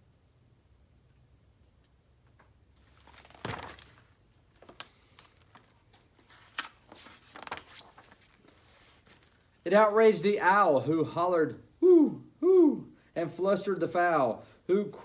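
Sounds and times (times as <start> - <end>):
paper rustling and crinkling: 2.8 - 9.6.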